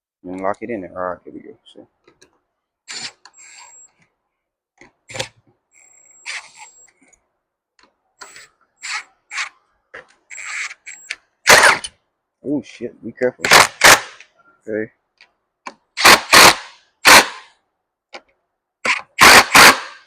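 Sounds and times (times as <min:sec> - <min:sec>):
thin high squeak: 0:02.9 - 0:04.0, 0:05.8 - 0:07.1.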